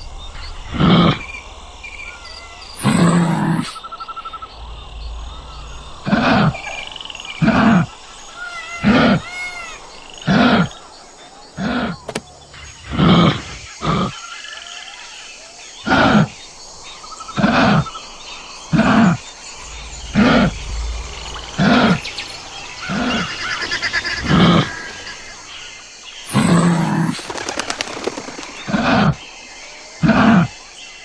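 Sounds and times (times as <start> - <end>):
kangaroo low throaty calls: 0.0 - 3.8, 4.4 - 14.3, 15.8 - 29.2.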